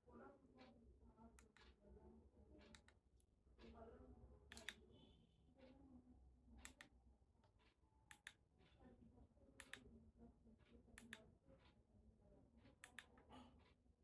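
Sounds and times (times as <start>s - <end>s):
faint sharp clicks: 9.6s - 9.9s.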